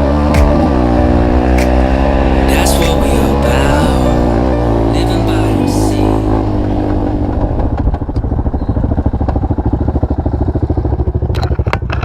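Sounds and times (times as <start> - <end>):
vehicle engine idling: 0.0 - 12.0.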